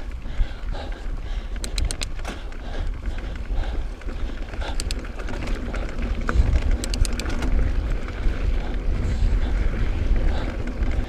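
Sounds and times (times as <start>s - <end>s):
bike tyres rumbling on trail: 0.0s - 11.0s
wind buffeting microphone: 0.0s - 11.0s
rapid ticking: 1.4s - 7.5s.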